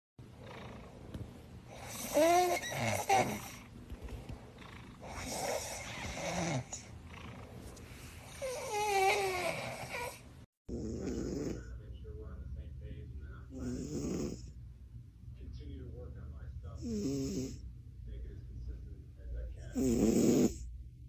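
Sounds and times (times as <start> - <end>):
kitten snoring: 0.2 - 12.0, 13.4 - 14.6, 16.8 - 17.6, 19.5 - 20.7.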